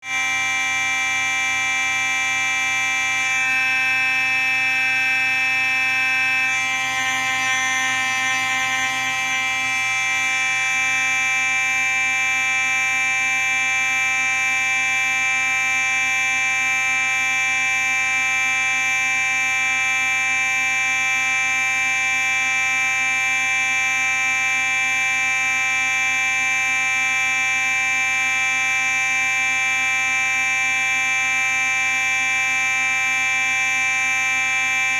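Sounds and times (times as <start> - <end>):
fire alarm tone: 0.0 - 34.9.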